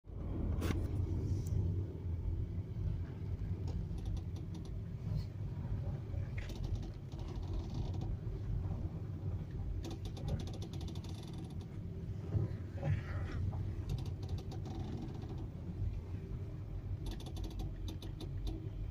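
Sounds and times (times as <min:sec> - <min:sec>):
car engine running rumble: 0:00.1 - 0:18.9
car suspension creaking: 0:09.8 - 0:11.8.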